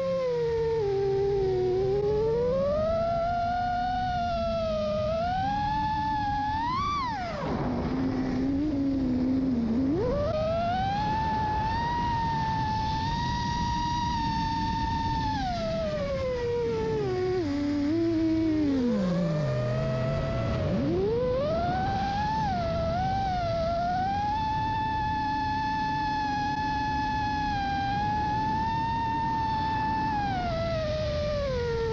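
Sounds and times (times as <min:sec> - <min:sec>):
quadcopter motors whining: 0:00.0 - 0:31.9.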